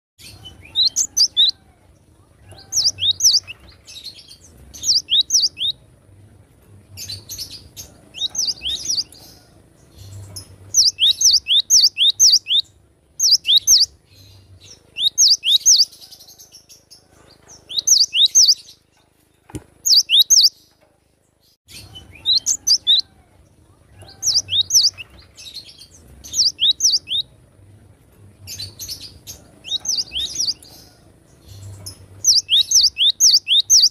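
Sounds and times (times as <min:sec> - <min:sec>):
bird singing whistled notes: 0:04.8 - 0:05.8, 0:10.1 - 0:14.0, 0:15.0 - 0:15.9, 0:17.7 - 0:18.8, 0:19.8 - 0:20.6, 0:24.0 - 0:25.1, 0:26.3 - 0:27.3, 0:31.7 - 0:33.9.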